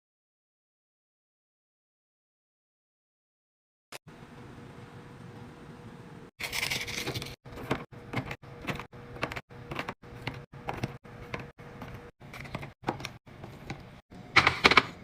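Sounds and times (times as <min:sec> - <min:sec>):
plastic packaging crinkling: 0:06.4 - 0:07.4.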